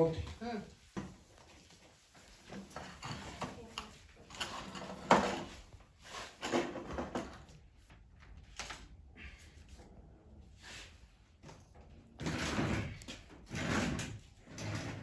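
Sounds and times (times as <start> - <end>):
knocks and clatter of handling: 2.2 - 8.8.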